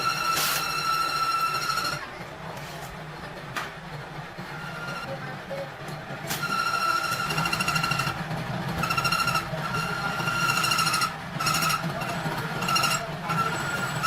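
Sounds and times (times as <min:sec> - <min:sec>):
machine humming: 0:03.1 - 0:14.0.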